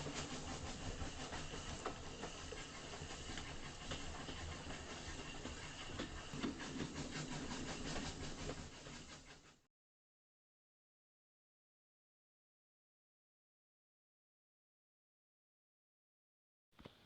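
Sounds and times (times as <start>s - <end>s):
locomotive running: 0.0s - 9.3s
rail noise with clicks: 0.0s - 9.5s.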